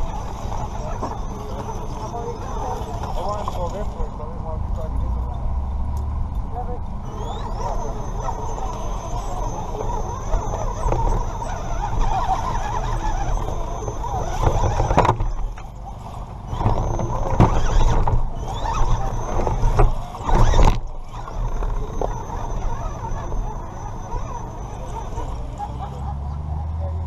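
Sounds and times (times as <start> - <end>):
electric motor and gear whine: 0.0 - 27.0
tyres scraping on rock: 7.2 - 25.7.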